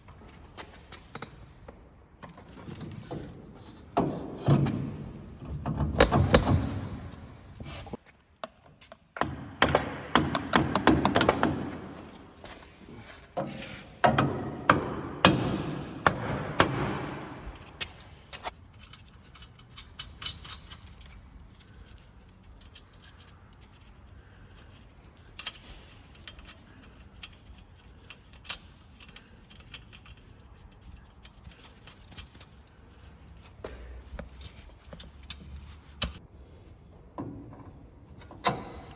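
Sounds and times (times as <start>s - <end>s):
metal tools clinking and jangling: 17.6s - 33.3s.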